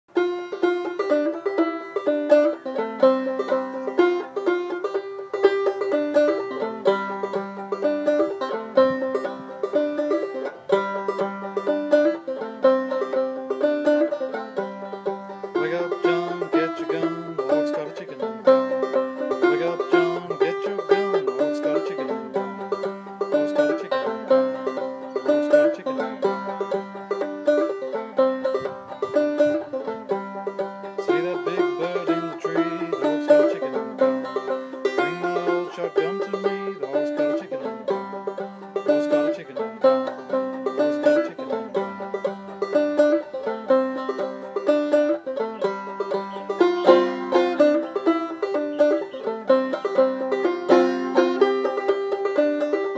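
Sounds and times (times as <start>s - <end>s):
banjo plucked melody: 0.1s - 52.9s.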